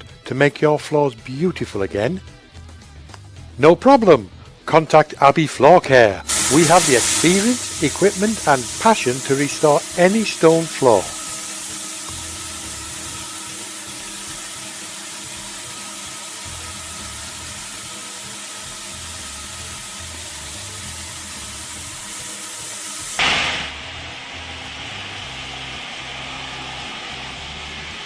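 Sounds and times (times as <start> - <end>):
quiet background music: 0.0 - 28.0
steady hiss of spraying: 6.3 - 28.0.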